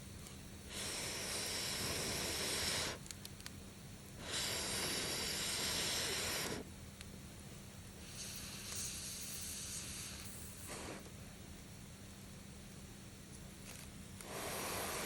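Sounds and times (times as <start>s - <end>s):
faint fire crackles: 0.1s - 15.0s
rush of air into fire: 8.0s - 11.1s, 14.2s - 15.0s.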